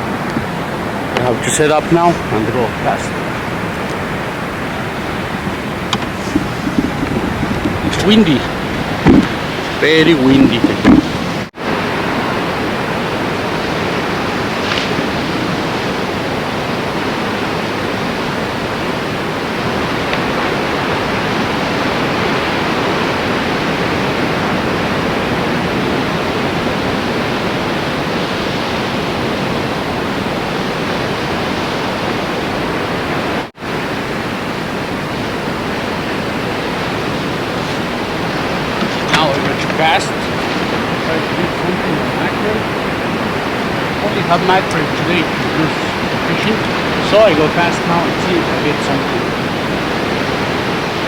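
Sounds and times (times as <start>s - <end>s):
wind on microphone: 0.0s - 51.0s.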